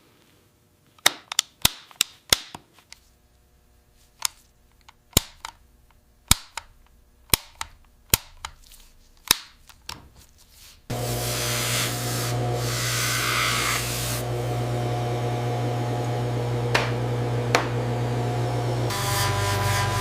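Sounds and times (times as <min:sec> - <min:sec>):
hissing machine hum: 0:10.9 - 0:20.0.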